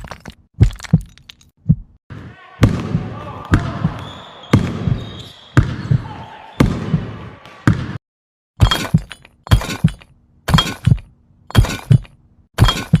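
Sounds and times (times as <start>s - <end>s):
heartbeat double thumps: 1.6s - 2.0s.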